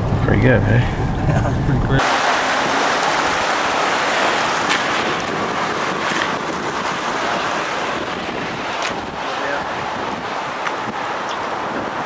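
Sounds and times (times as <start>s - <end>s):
floodwater rushing: 2.0s - 12.0s.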